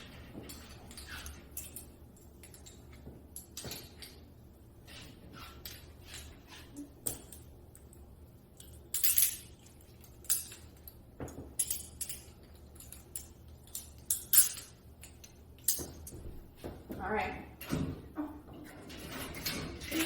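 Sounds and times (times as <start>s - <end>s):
metal handcuffs and chain clinking: 0.0s - 16.7s, 18.7s - 20.0s.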